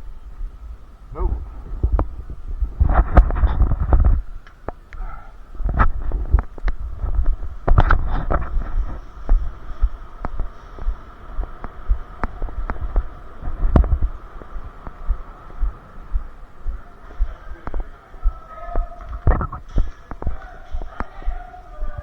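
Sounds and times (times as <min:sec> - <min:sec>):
faint steady hum: 0:00.0 - 0:22.0
low thumps of footsteps: 0:00.0 - 0:22.0.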